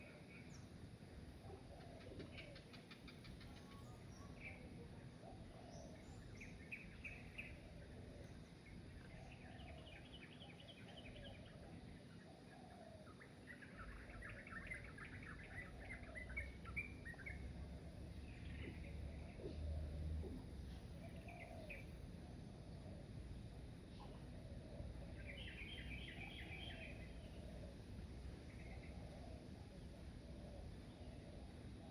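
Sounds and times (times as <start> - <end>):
birds chirping and calling: 5.4 - 22.0, 24.0 - 27.6.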